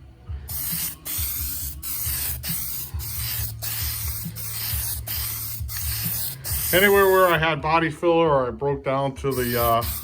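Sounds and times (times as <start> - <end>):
aerosol spray can hissing: 0.5 - 7.4, 9.3 - 10.0.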